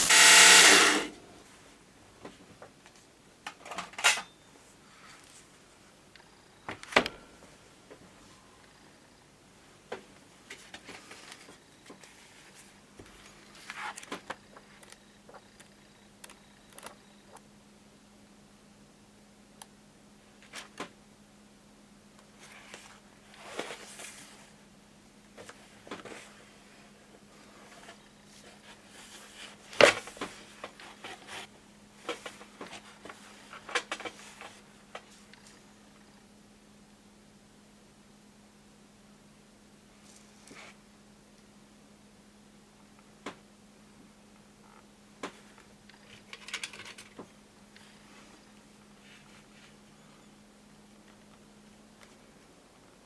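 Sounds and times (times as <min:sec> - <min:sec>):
faint steady hum: 0:00.0 - 0:53.0
small parts clicking and tapping: 0:45.9 - 0:47.2.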